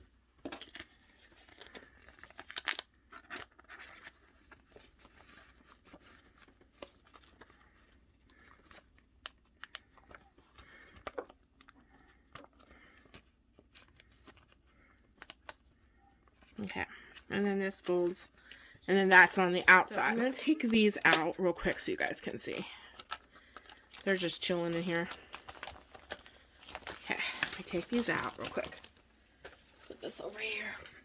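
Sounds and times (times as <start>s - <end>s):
paper rustling: 0.4s - 18.7s, 19.5s - 30.8s.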